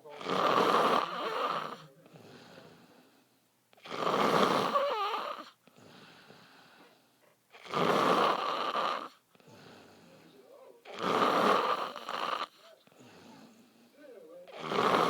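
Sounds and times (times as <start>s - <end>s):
man snoring loudly: 0.2s - 1.8s, 3.9s - 5.5s, 7.6s - 9.1s, 11.0s - 12.5s, 14.6s - 15.0s
faint breathing: 1.1s - 3.5s, 5.4s - 7.4s, 9.0s - 10.9s, 12.4s - 15.0s.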